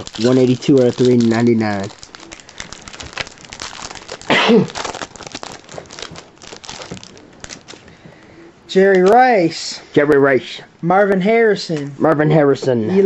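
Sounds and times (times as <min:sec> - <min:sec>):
foil wrappers crinkling: 0:00.0 - 0:08.3.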